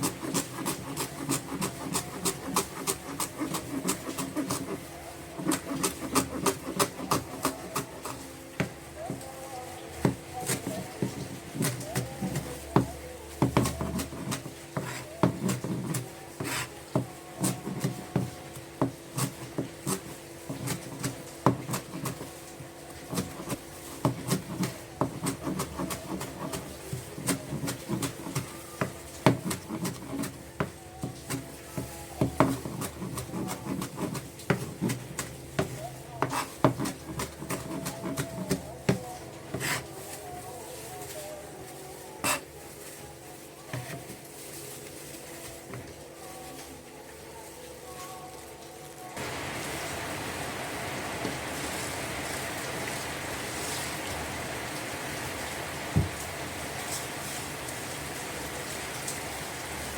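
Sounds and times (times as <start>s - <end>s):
scraping and rubbing: 0.0s - 9.3s, 10.0s - 46.7s.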